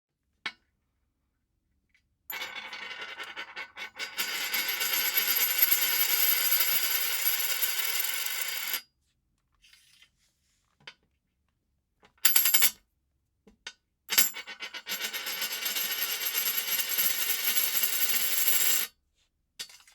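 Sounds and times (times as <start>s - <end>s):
coin spinning on glass: 2.3s - 8.8s, 12.3s - 12.7s, 14.1s - 18.9s.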